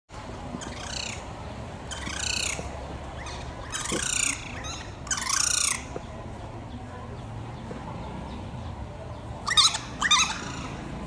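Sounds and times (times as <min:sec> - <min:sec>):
low steady background hum: 0:00.1 - 0:11.0
bird calling: 0:00.5 - 0:06.1, 0:09.4 - 0:11.0.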